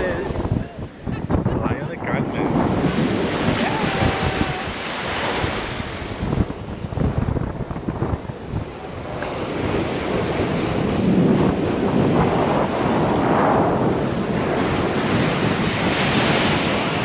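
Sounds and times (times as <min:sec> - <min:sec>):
sea surf washing on beach: 0:00.0 - 0:17.0
wind buffeting microphone: 0:00.0 - 0:17.0.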